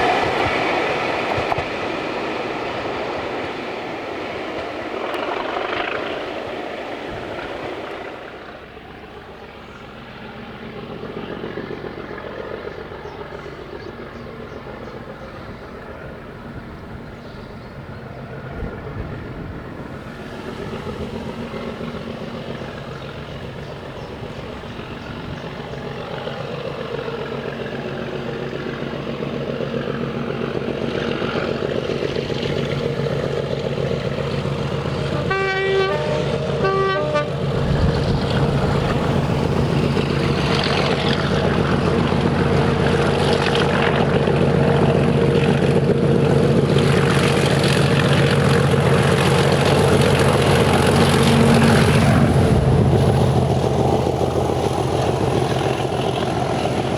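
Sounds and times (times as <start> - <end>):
diesel locomotive engine: 0.0 - 56.9
locomotive horn blasts: 35.0 - 39.8.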